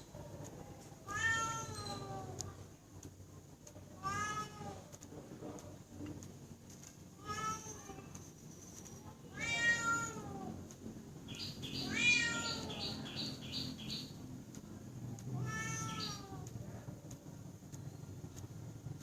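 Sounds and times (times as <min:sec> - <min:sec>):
cat meowing: 0:01.0 - 0:02.4, 0:04.0 - 0:04.8, 0:07.2 - 0:08.0, 0:09.3 - 0:10.5, 0:11.8 - 0:13.0, 0:15.3 - 0:16.5.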